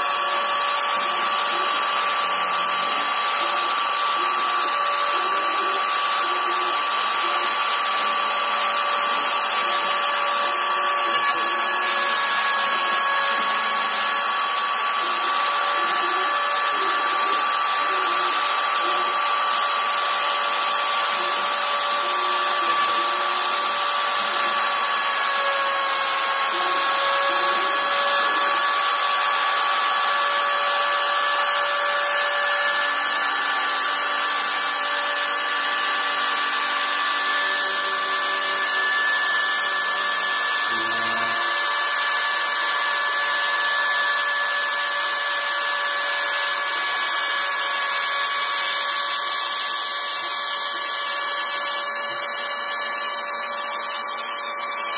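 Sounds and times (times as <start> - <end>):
cutting noise: 0.0 - 54.9
router spindle whine: 0.0 - 54.9.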